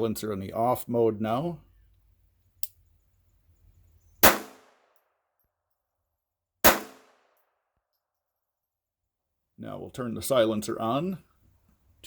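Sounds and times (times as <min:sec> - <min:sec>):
pistol shots: 0:04.2 - 0:04.9, 0:06.6 - 0:07.3.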